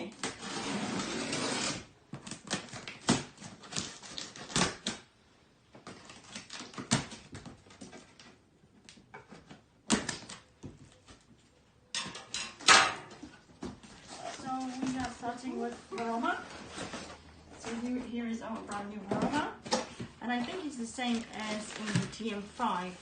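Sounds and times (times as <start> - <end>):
packaging rustling: 19.9 - 23.0.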